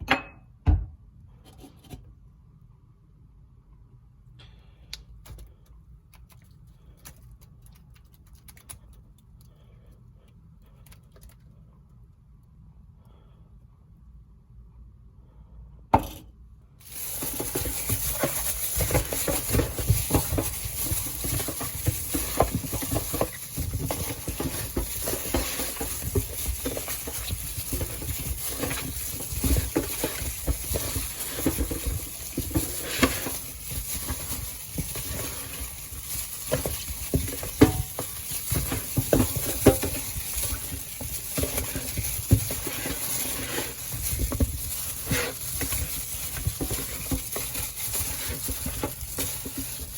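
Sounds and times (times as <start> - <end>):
wet food being stirred: 16.8 - 49.9.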